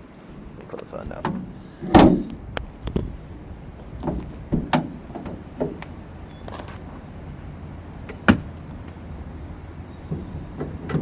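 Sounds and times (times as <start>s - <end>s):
clicks and knocks working on car: 1.1s - 3.1s.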